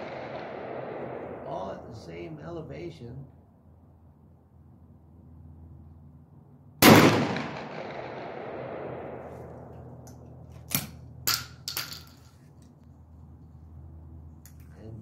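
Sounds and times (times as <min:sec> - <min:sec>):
shotgun shot with echo: 0:00.0 - 0:01.6, 0:06.8 - 0:09.6.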